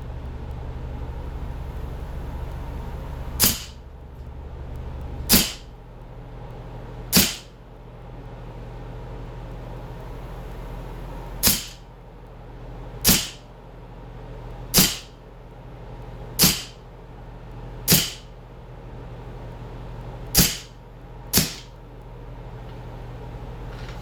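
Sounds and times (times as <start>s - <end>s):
air pistol shots: 3.4s - 3.8s, 5.3s - 5.7s, 7.1s - 7.5s, 11.4s - 11.8s, 13.0s - 13.4s, 14.8s - 15.2s, 16.4s - 16.8s, 17.9s - 18.3s, 20.4s - 20.7s, 21.4s - 21.7s.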